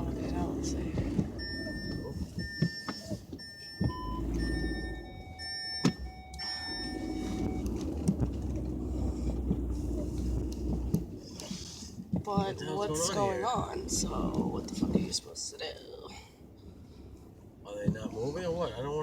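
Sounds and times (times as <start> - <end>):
car warning chime: 0.0 - 11.0, 12.4 - 14.8
car engine idling: 0.0 - 16.0.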